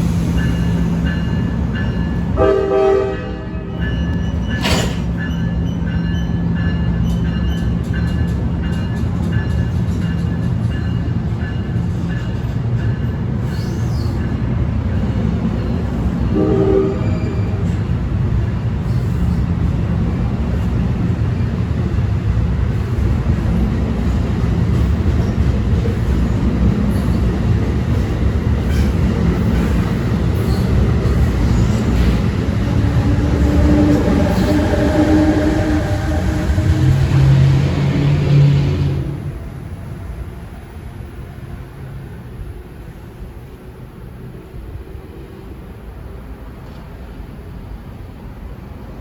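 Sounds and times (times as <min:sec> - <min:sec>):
passenger train rumbling on rails: 0:00.0 - 0:49.0
train horn blast: 0:02.4 - 0:03.8, 0:16.3 - 0:17.6, 0:33.0 - 0:39.4.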